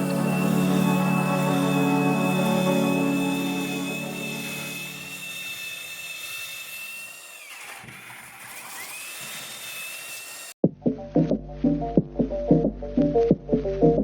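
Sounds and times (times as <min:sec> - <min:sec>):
belt sander whining: 0:00.0 - 0:10.6.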